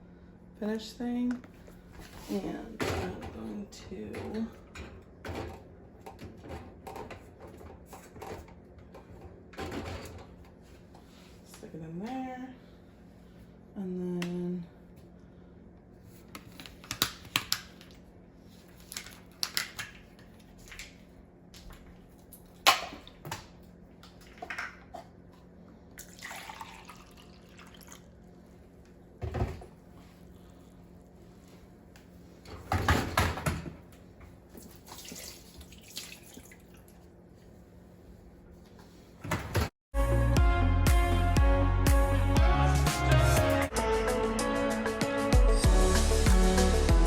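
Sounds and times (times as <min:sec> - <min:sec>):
water splashing in a sink: 0:26.0 - 0:28.0, 0:34.6 - 0:37.0.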